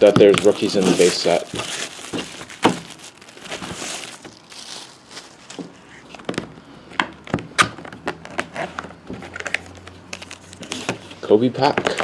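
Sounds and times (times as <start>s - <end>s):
foil packs rustling: 0.0s - 6.4s.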